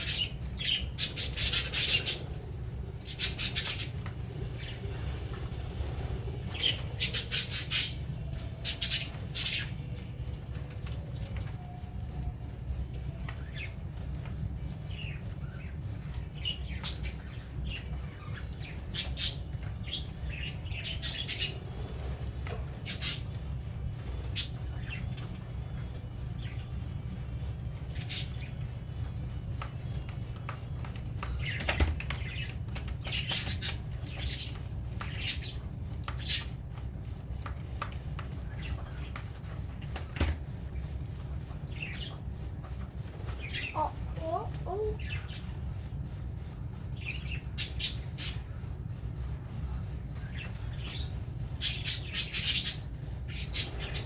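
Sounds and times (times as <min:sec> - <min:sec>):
budgerigars chirping and chattering: 0:00.0 - 0:10.1, 0:13.2 - 0:26.8, 0:27.8 - 0:36.8, 0:41.7 - 0:45.6, 0:47.0 - 0:54.0
steady low hum: 0:00.0 - 0:54.0.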